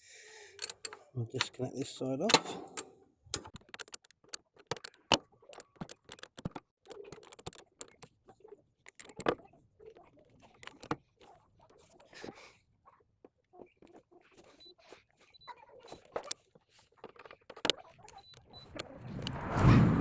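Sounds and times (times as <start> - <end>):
spanner clicks and metallic clinks: 0.6 - 1.6.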